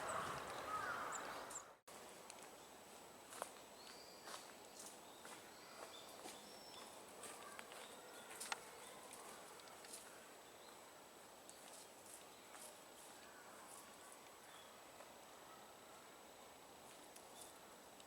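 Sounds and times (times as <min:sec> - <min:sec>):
birds calling: 0:00.0 - 0:01.8.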